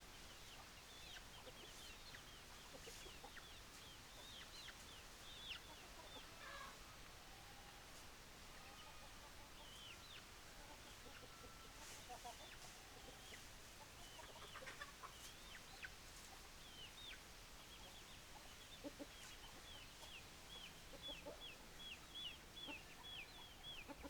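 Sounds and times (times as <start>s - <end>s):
chickens calling: 8.5s - 24.0s.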